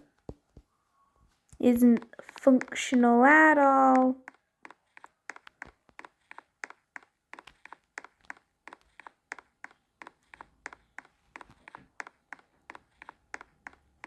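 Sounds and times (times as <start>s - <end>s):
rapid light clicking: 3.9s - 14.0s.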